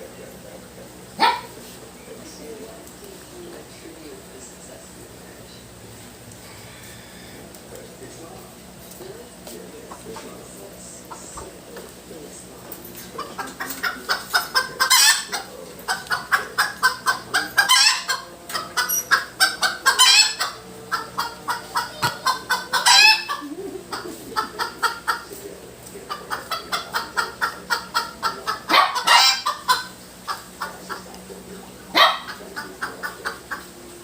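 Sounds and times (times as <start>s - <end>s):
bird clucking: 6.4s - 34.0s
bird harsh squawk: 16.2s - 25.2s.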